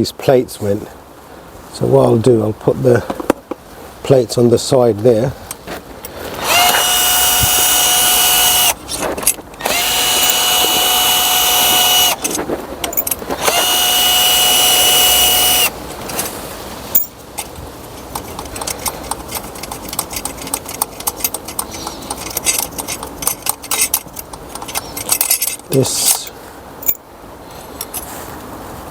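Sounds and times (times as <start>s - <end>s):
impact gun whirring: 6.4s - 8.8s, 9.6s - 12.4s, 13.4s - 15.8s
metallic clicks and clinks: 16.9s - 27.0s.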